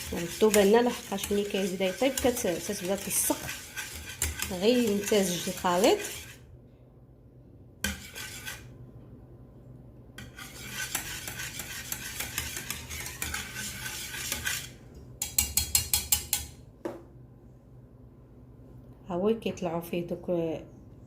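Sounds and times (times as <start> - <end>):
utensil stirring in a saucepan: 0.0 - 6.6, 7.8 - 8.8, 10.2 - 16.6.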